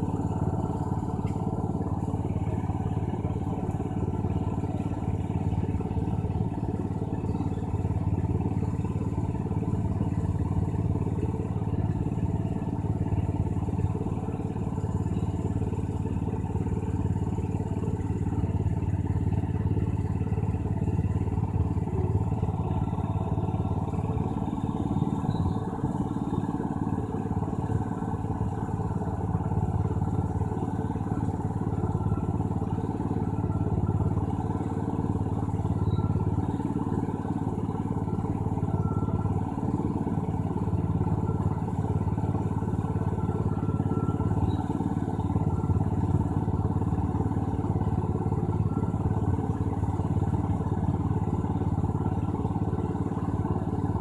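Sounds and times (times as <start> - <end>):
low mechanical hum: 0.0 - 54.0.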